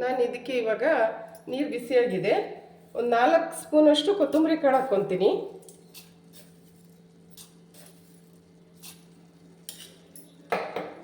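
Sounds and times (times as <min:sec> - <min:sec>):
spoon clinking against metal pot: 0:08.8 - 0:10.4.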